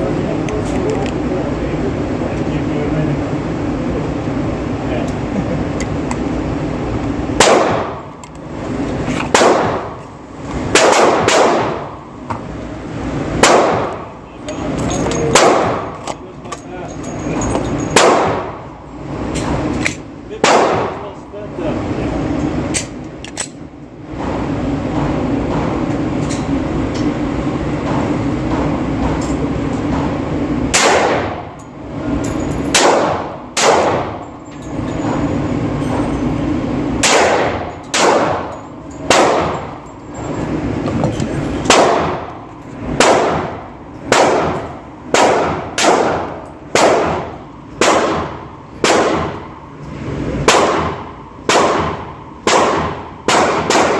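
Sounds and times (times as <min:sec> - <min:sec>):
pistol shots echoing: 0:07.4 - 0:08.1, 0:09.3 - 0:10.0, 0:10.7 - 0:12.0, 0:13.4 - 0:14.1, 0:15.3 - 0:16.1, 0:17.9 - 0:18.6, 0:20.4 - 0:21.1, 0:30.7 - 0:31.5, 0:32.7 - 0:34.2, 0:37.0 - 0:38.5, 0:39.1 - 0:39.8, 0:41.7 - 0:42.3, 0:43.0 - 0:49.5, 0:50.5 - 0:53.9.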